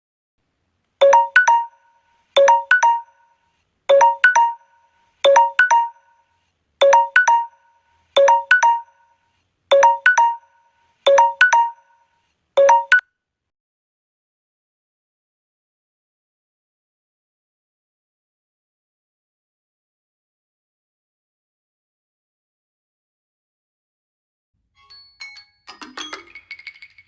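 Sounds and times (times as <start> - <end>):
phone timer alarm tone: 1.0 - 13.0.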